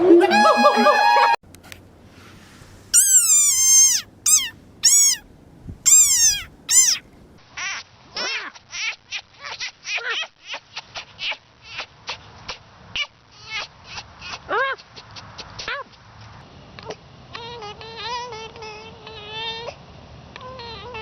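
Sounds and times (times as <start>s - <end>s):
animal short quick calls: 2.9s - 5.2s, 5.9s - 7.1s
animal high-pitched falling cries: 3.0s - 5.2s, 5.9s - 7.1s.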